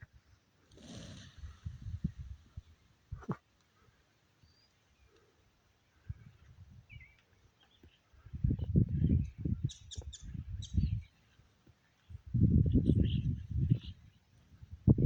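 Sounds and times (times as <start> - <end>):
low rumbling microphone noise: 0.8 - 3.4, 8.2 - 11.1, 12.1 - 15.0
birds chirping: 4.4 - 14.4.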